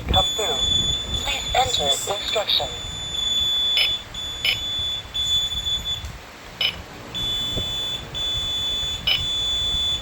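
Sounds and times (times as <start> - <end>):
short beeps: 0.1 - 6.0
fire alarm high-pitched tone: 0.1 - 10.0.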